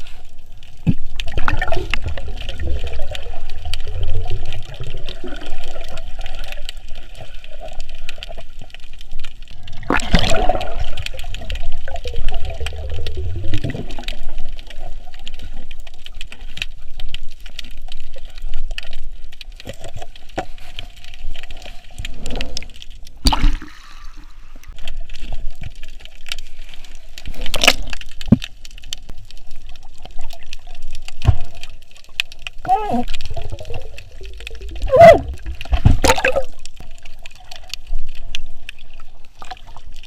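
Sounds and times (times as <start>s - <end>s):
water sloshing and bubbling: 0.0s - 40.0s
crackle of sharp clicks: 24.7s - 34.8s.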